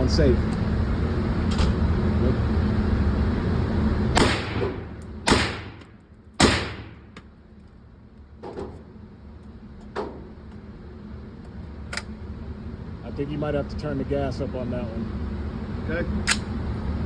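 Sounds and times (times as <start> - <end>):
suppressed rifle shots: 4.2 - 5.8, 6.4 - 7.0.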